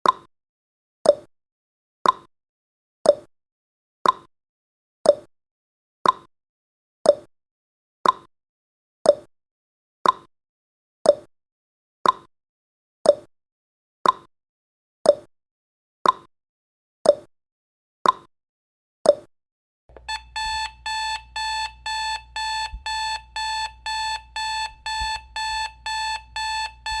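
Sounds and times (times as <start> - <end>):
clock ticking: 19.9 - 27.0
electronic alarm beeping: 19.9 - 27.0.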